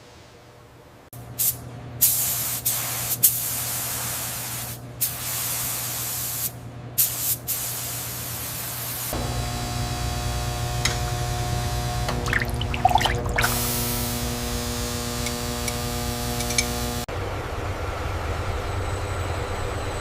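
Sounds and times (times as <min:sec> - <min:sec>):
compressed air spray hissing: 0:01.4 - 0:09.2
steady low hum: 0:09.1 - 0:20.0.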